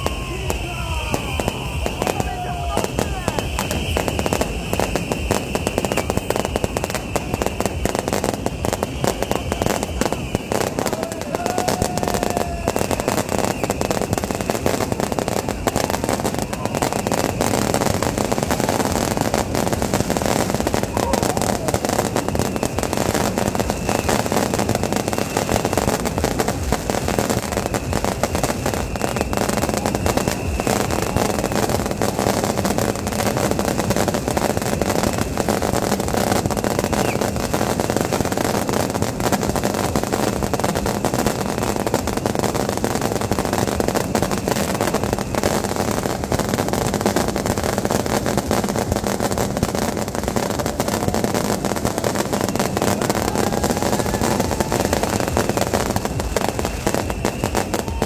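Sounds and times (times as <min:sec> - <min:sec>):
fireworks crackling pops: 0:00.0 - 0:58.0
faint thin whistle: 0:01.0 - 0:10.8, 0:12.7 - 0:14.7, 0:36.7 - 0:37.4, 0:56.8 - 0:58.0.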